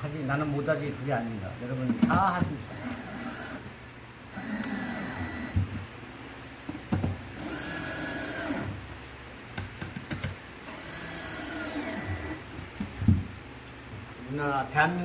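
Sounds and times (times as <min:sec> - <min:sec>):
electric drill motor whine: 0:02.7 - 0:03.7, 0:04.3 - 0:05.6, 0:07.4 - 0:08.8, 0:10.6 - 0:12.4.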